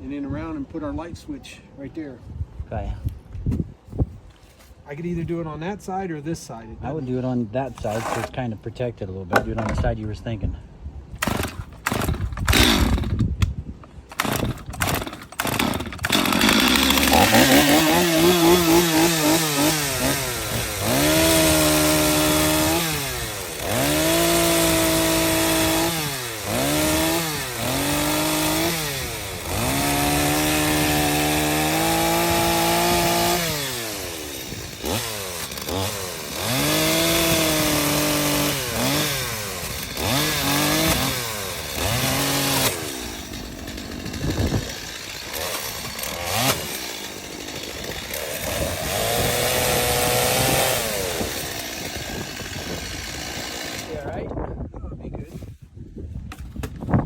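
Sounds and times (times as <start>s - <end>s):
chainsaw cutting wood: 7.8s - 8.4s, 11.2s - 54.3s.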